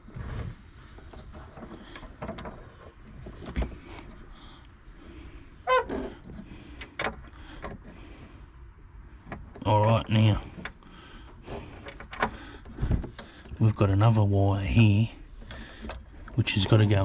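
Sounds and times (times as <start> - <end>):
handling clicks and knocks: 0.9 - 4.3, 5.7 - 8.0, 9.2 - 14.1.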